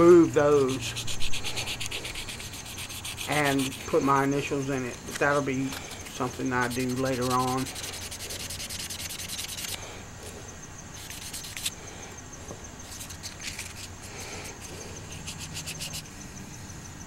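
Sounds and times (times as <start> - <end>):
sandpaper rubbing: 0.0 - 4.1, 5.2 - 9.8, 11.0 - 11.8, 12.8 - 16.0.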